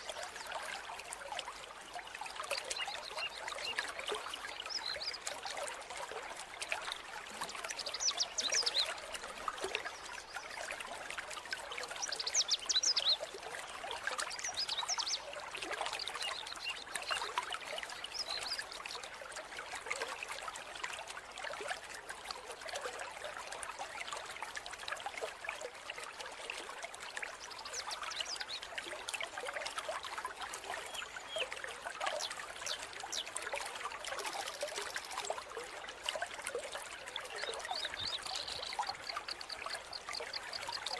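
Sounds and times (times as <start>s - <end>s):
stream water trickling and splashing: 0.0s - 40.9s.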